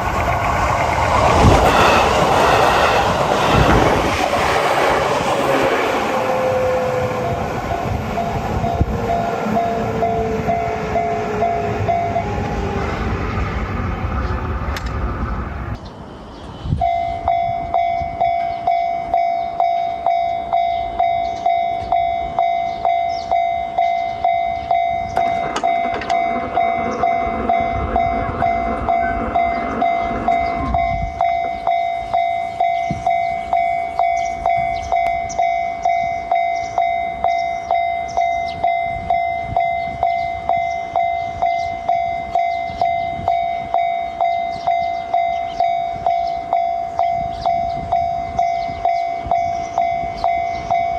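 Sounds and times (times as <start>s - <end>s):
level crossing warning bell: 0.0s - 13.9s, 16.8s - 50.9s
train rushing past: 0.0s - 15.8s, 24.7s - 46.2s.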